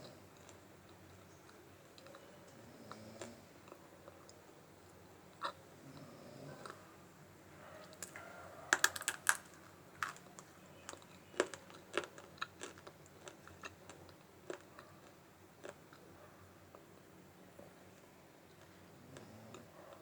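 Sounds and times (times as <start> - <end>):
dry clay being crunched: 8.0 - 13.4.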